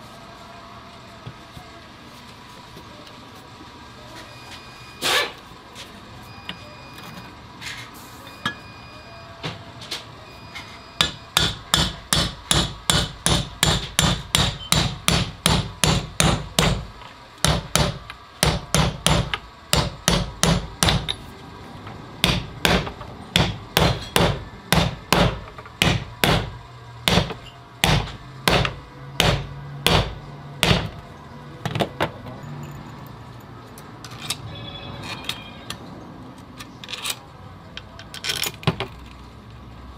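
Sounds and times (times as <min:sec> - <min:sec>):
hammer tapping on metal: 0:11.0 - 0:16.8, 0:22.2 - 0:30.9.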